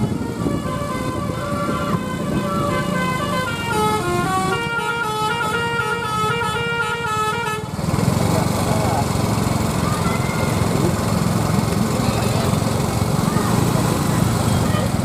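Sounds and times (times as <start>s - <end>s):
musical bus horn playing tune: 0.0s - 7.8s
low engine rumble: 0.0s - 15.0s.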